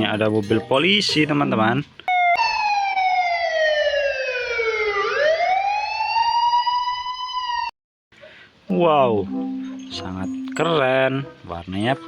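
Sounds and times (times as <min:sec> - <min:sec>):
police siren wailing: 0:02.1 - 0:07.7.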